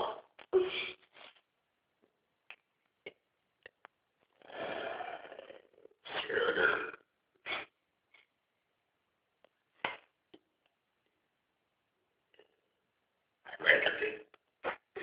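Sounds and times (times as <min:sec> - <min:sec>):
person burping: 0:04.4 - 0:07.7.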